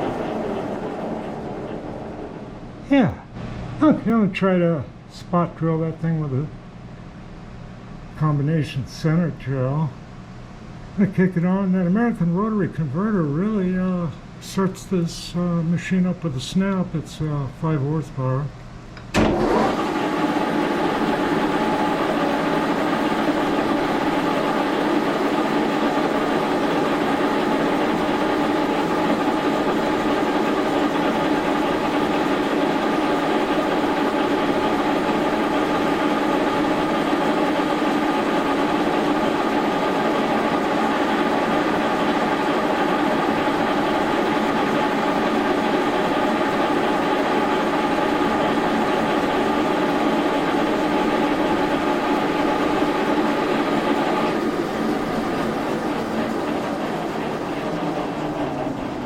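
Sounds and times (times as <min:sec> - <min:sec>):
milling machine humming: 0:00.0 - 0:05.1, 0:18.5 - 0:59.0.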